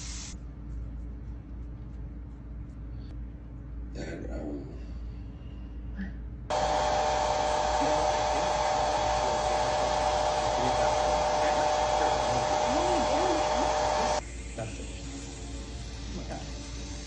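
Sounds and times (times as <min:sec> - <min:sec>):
hair dryer blowing: 0:06.5 - 0:14.8.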